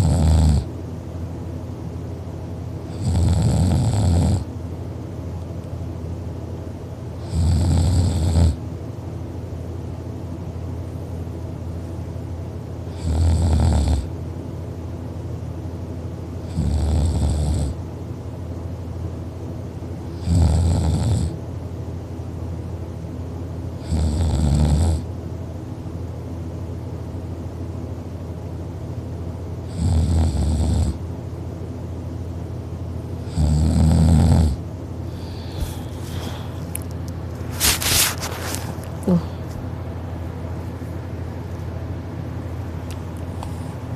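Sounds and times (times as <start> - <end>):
person snoring: 0.0 - 0.7, 3.0 - 4.4, 7.2 - 8.6, 12.9 - 14.1, 16.5 - 17.8, 20.2 - 21.3, 23.8 - 25.0, 29.7 - 31.0, 33.2 - 36.6
steady low hum: 0.0 - 43.9.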